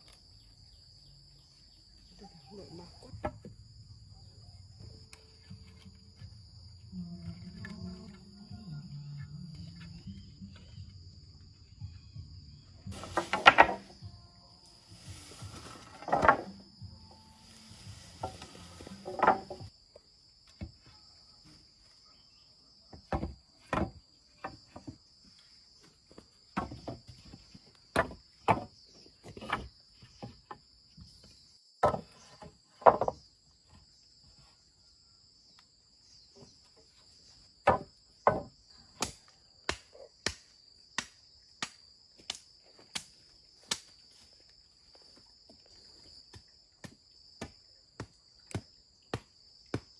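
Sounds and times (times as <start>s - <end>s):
insects chirring: 0.0s - 49.9s.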